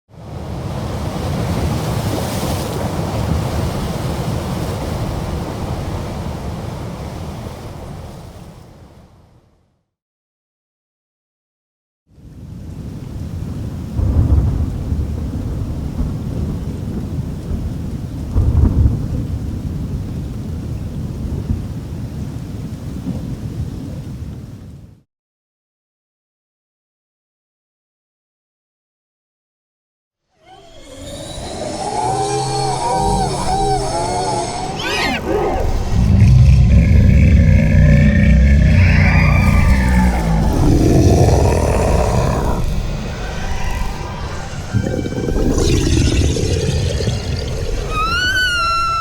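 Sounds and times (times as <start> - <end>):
deep rushing rumble: 35.5 - 48.2.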